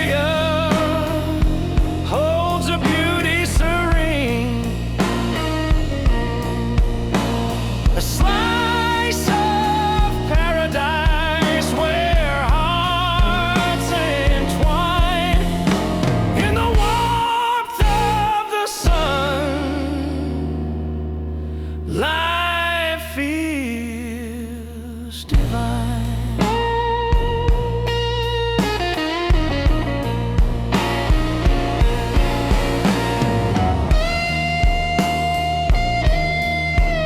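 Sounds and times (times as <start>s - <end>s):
held bass note: 0.0s - 18.3s, 29.4s - 36.8s
song with guitar and drums: 0.0s - 21.9s, 25.3s - 37.0s.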